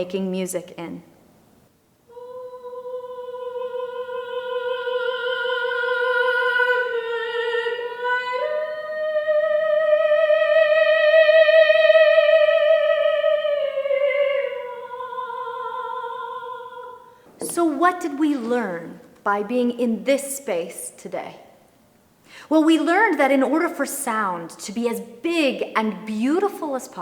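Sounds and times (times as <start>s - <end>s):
woman singing with vibrato: 2.1s - 21.4s.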